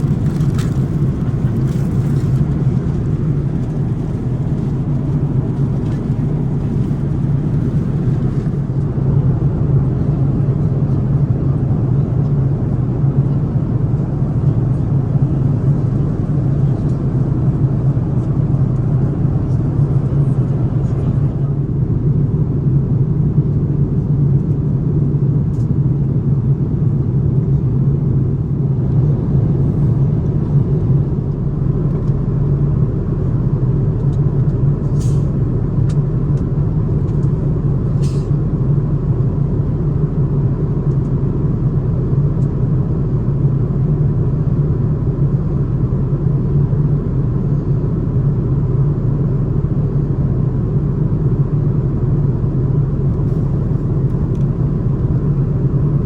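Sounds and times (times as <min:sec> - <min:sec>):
airliner cabin rumble: 0:00.0 - 0:56.0.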